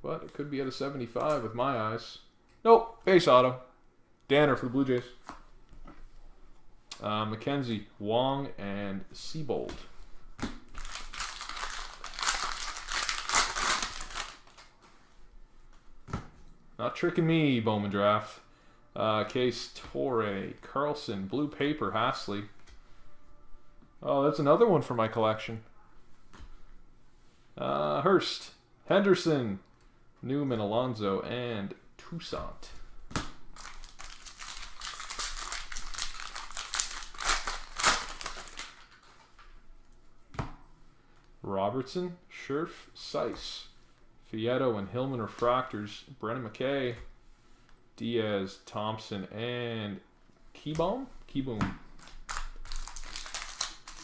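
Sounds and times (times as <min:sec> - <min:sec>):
wrappers crinkling and crumpling: 0:10.7 - 0:14.8, 0:33.5 - 0:39.5, 0:51.9 - 0:54.0.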